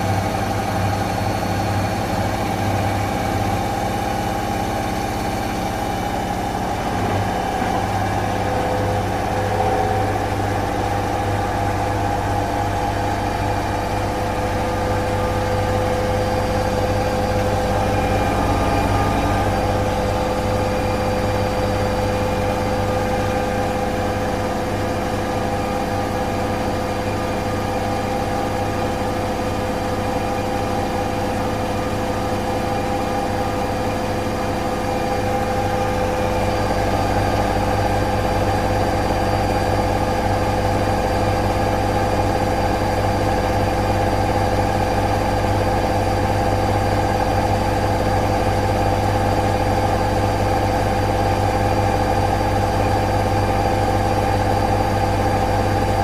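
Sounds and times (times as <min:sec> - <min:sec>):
washing machine motor hum: 0:00.0 - 0:56.0.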